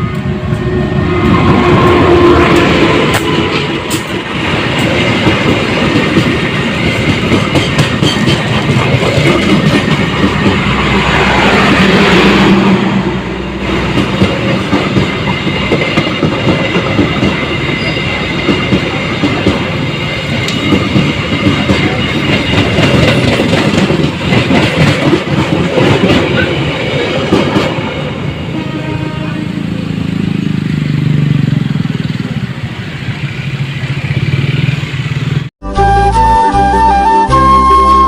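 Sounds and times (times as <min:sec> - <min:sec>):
train rumble: 0:00.0 - 0:35.5
train wheels clattering: 0:01.3 - 0:12.2, 0:13.6 - 0:28.4.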